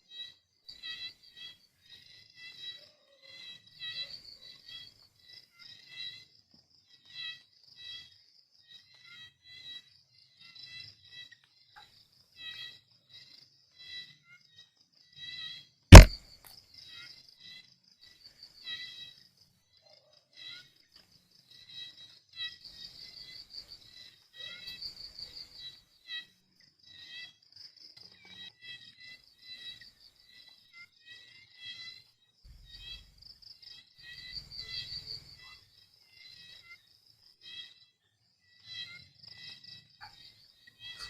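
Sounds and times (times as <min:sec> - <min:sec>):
crickets chirping: 0:20.8 - 0:41.0.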